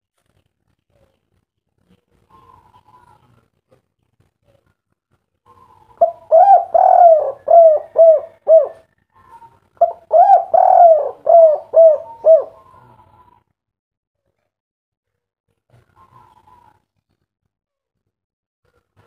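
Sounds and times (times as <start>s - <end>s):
dove cooing: 2.3s - 3.2s, 5.5s - 13.4s.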